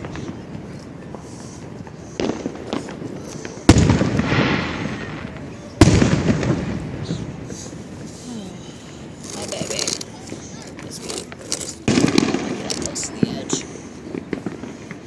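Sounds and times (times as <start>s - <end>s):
small firework pops: 0.0s - 8.1s, 9.5s - 15.0s
loud firework booms echoing: 2.2s - 8.0s, 11.8s - 15.0s.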